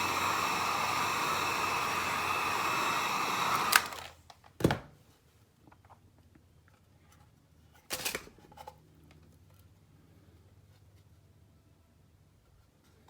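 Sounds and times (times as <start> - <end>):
rushing hiss: 0.0 - 4.0.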